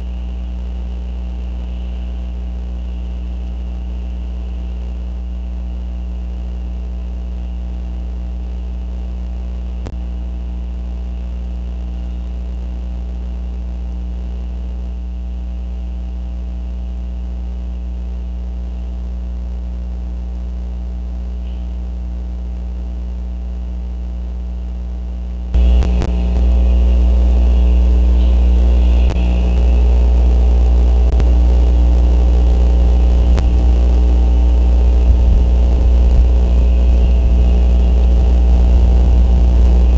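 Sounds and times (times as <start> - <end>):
low electrical hum: 0.0 - 39.9
faint high hiss: 25.6 - 39.9.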